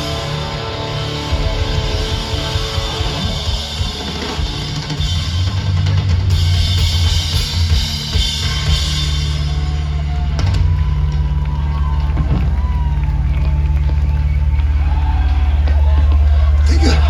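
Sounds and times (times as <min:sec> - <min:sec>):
live rock band playing: 0:00.0 - 0:15.1
heavy bass drum: 0:00.0 - 0:17.0.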